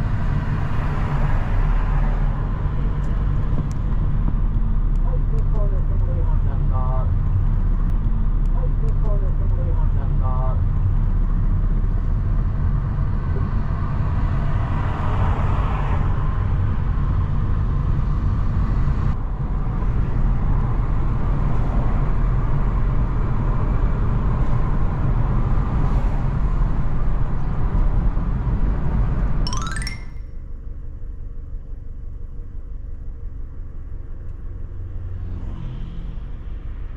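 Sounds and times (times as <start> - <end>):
road traffic rumble: 0.0 - 29.2.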